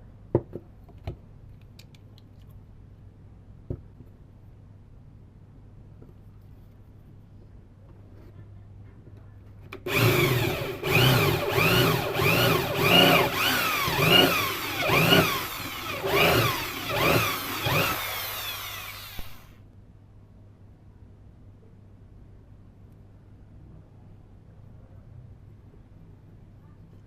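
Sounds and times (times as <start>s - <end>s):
sewing machine motor whining: 9.9s - 19.5s.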